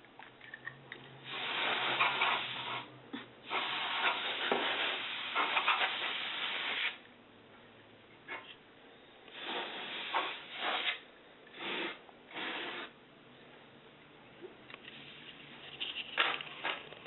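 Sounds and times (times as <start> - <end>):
compressed air spraying: 1.2 - 7.0, 9.3 - 13.0.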